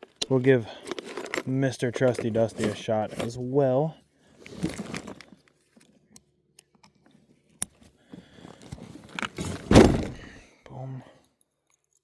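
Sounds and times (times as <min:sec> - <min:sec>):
fishing tackle rustling and clicking: 0:00.0 - 0:03.4.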